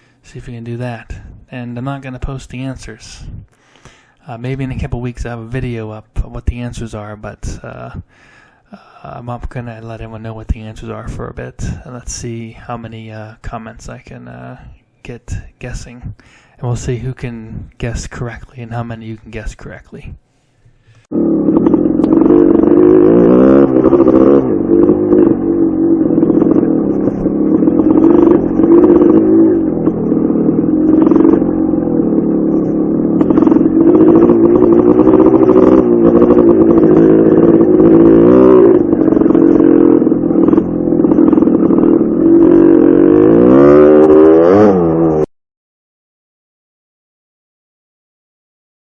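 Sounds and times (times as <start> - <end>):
dirt bike engine revving: 21.1 - 45.3.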